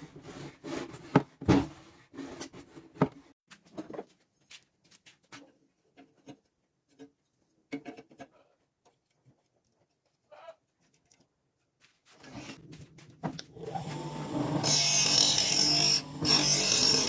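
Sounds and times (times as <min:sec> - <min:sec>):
motor running: 0:13.6 - 0:17.0.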